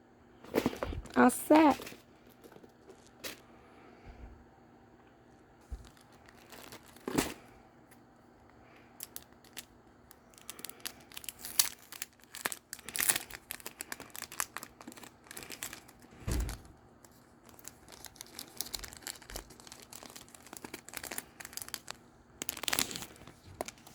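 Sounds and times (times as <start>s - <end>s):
paper packaging crinkling: 5.6s - 8.0s, 8.7s - 23.9s
thump: 16.2s - 16.6s.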